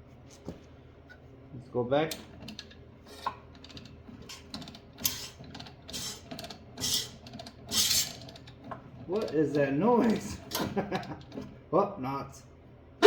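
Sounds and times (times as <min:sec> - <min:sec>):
metallic clicking and rattling: 0:03.5 - 0:11.5.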